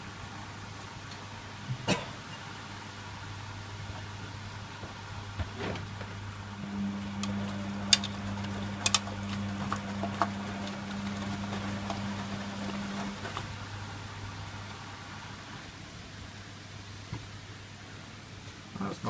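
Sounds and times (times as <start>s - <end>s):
low background hum: 0.0s - 19.0s
washing machine humming: 0.0s - 19.0s
sharp clicks and light knocks: 8.8s - 9.1s.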